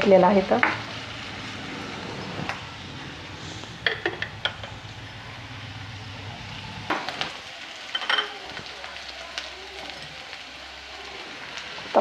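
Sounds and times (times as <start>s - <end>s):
onions sizzling in oil: 0.0s - 12.0s
low hum: 0.8s - 6.9s.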